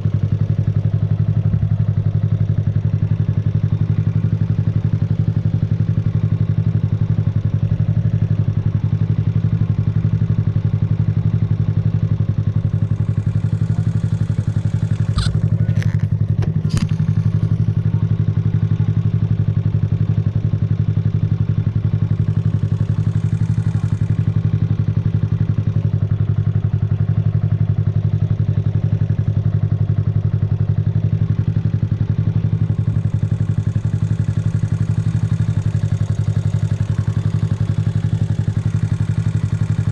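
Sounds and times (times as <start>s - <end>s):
motorcycle engine idling: 0.0s - 39.9s
sharp clicks: 14.9s - 17.0s.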